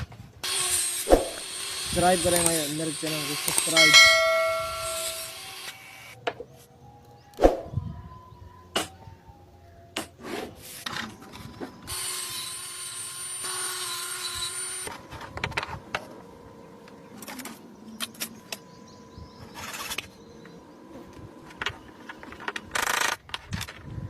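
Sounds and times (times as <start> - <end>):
power tool running: 0.4 - 6.2, 11.8 - 15.0.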